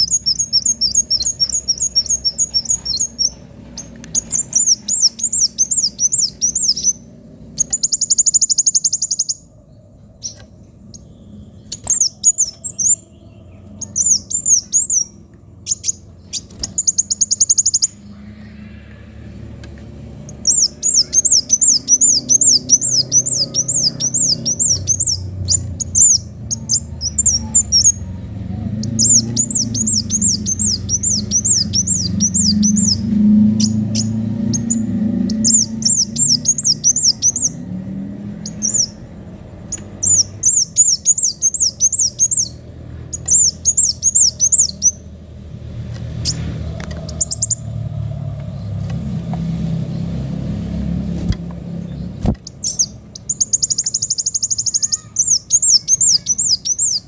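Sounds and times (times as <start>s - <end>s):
steady low hum: 0.0s - 54.1s
sunbird singing: 0.0s - 57.0s.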